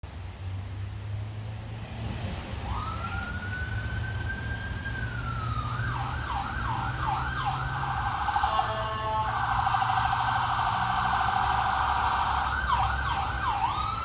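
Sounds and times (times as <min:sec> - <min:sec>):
siren wailing and yelping: 0:04.4 - 0:14.0.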